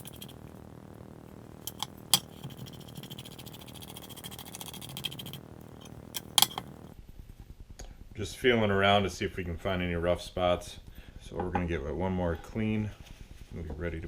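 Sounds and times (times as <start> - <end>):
sharp clicks and light knocks: 0.0 - 6.9
faint steady high hiss: 0.0 - 7.0.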